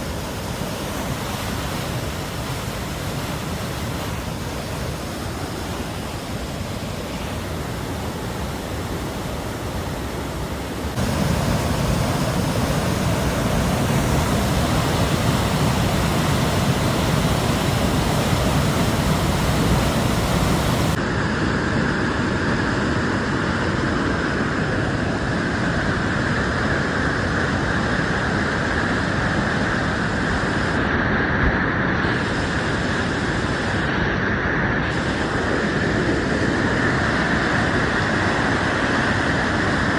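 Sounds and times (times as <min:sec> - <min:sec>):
floodwater rushing: 0:00.0 - 0:21.0.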